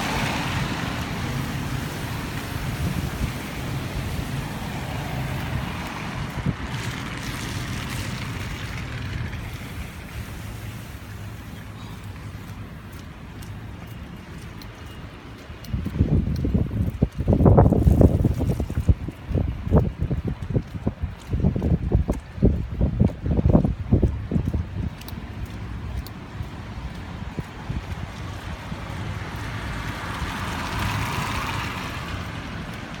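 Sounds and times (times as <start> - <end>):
vehicle passing by: 0.0 - 12.5, 27.4 - 33.0.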